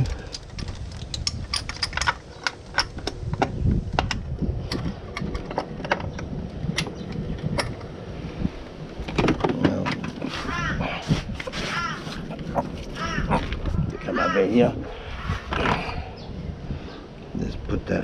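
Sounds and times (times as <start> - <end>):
metallic clicks of hand tools: 0.0 - 3.4.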